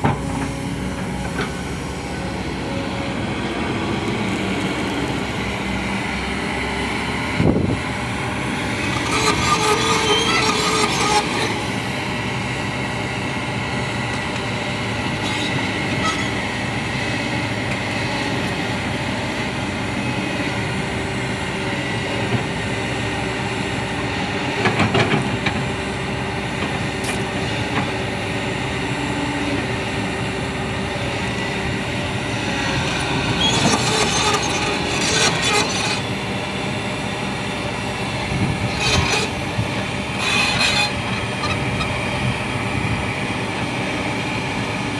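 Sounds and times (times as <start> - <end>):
excavator engine and hydraulics whining: 0.0 - 44.9
metallic clanking and squealing: 8.9 - 11.6, 15.2 - 16.4, 32.8 - 36.1, 38.5 - 42.0.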